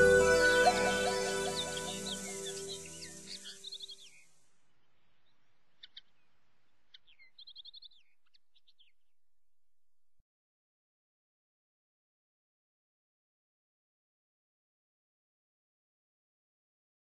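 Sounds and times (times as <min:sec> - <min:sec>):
background music: 0:00.0 - 0:03.7
quiet hiss: 0:00.0 - 0:08.2
faint bird chirps: 0:00.0 - 0:09.2.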